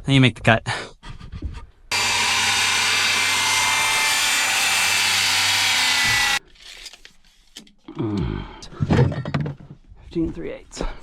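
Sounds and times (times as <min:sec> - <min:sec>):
electric power saw cutting wood: 0:01.9 - 0:06.4.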